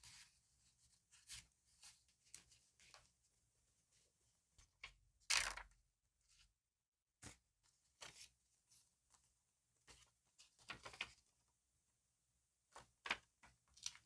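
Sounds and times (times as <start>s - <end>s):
paper and stickers rustling: 9.8s - 11.2s.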